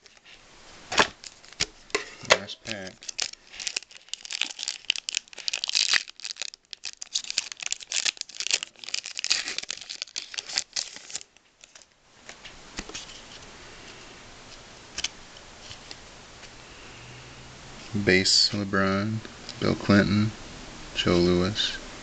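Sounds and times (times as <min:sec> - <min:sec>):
foil pack tearing and crinkling: 0:00.9 - 0:01.8, 0:02.6 - 0:11.9.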